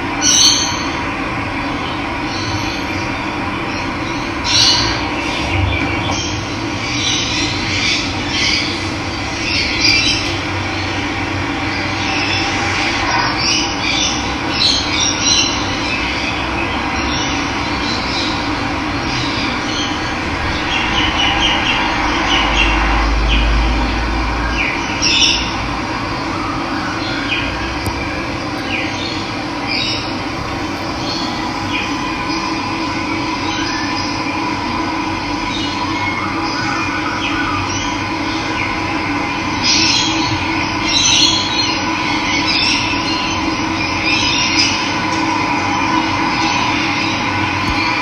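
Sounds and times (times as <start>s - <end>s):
birds chirping and calling: 3.7s - 10.9s, 28.6s - 34.2s
low rumble: 4.6s - 13.8s, 16.3s - 26.6s, 27.4s - 35.4s.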